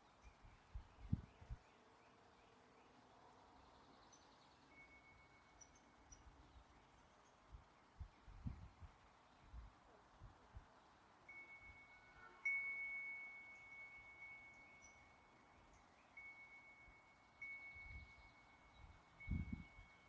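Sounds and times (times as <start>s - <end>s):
faint bird chirps: 0.0s - 8.8s
wind chime ringing: 11.3s - 20.0s.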